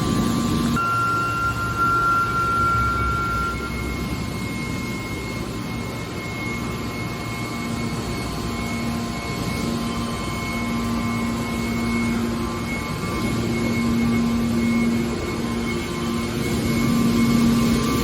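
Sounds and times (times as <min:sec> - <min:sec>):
high whine: 0:00.0 - 0:18.0
hydraulic baler drone: 0:00.0 - 0:18.0.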